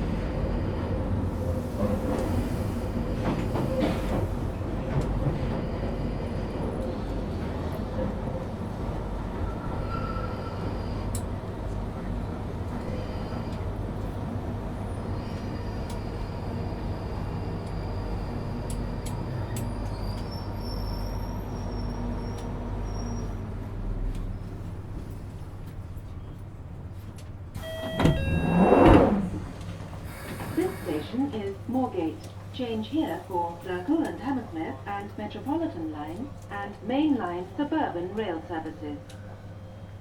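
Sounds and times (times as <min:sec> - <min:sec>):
train rumbling in tunnel: 0:00.0 - 0:40.0.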